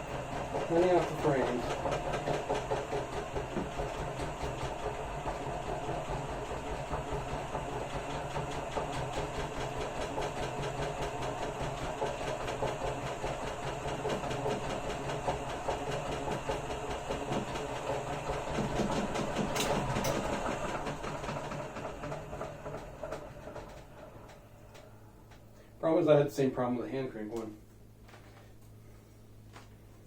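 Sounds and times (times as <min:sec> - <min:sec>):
motor hum: 0:00.0 - 0:30.0.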